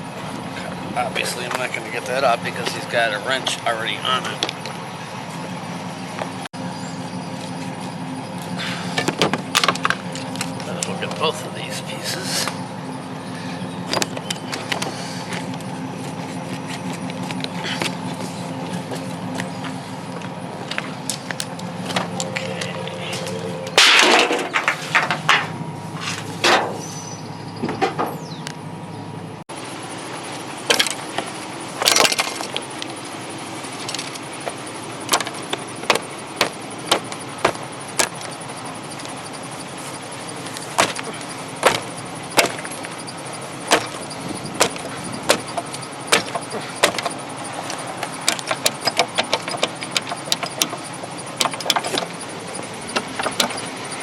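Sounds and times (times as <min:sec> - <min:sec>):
scrap items knocking and clattering: 0:23.8 - 0:26.8.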